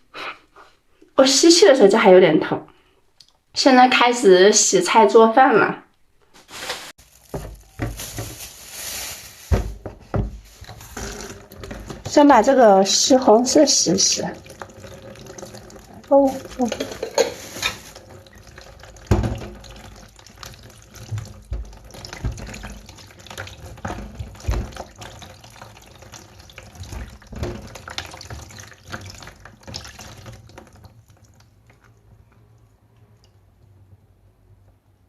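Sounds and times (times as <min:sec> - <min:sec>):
water splashing: 0:06.5 - 0:32.2
knocks against sink: 0:09.5 - 0:10.4
tap running into a sink: 0:14.1 - 0:30.9.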